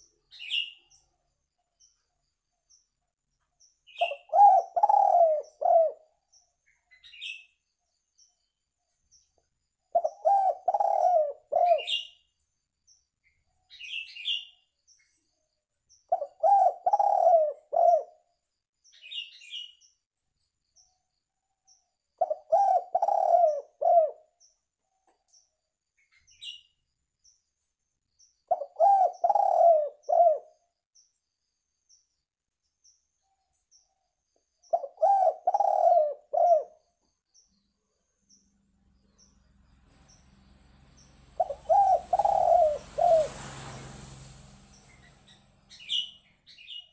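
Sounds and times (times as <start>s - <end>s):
dove cooing: 4.0s - 6.1s, 9.9s - 12.1s, 16.1s - 18.2s, 22.2s - 24.3s, 28.5s - 30.5s, 34.7s - 36.8s, 41.0s - 46.1s.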